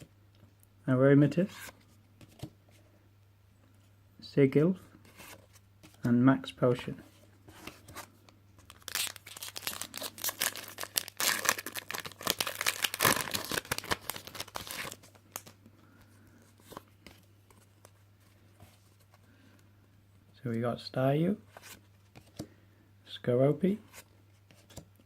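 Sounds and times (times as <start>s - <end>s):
foil wrapper tearing and crinkling: 8.7s - 15.5s.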